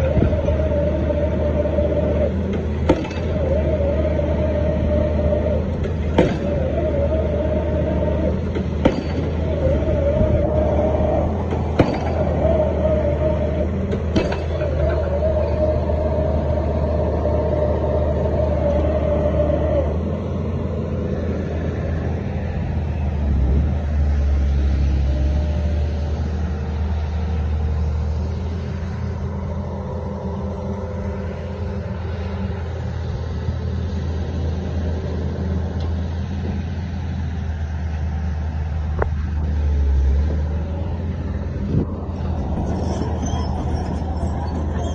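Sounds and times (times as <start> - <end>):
heavy diesel engine rumbling: 0.0 - 44.9
steady whine: 0.0 - 44.9.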